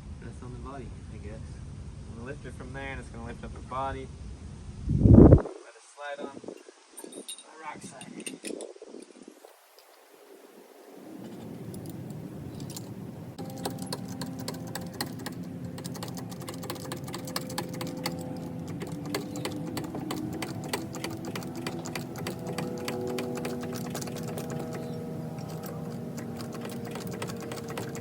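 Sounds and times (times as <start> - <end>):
small motor ticking rattle: 11.7 - 28.0.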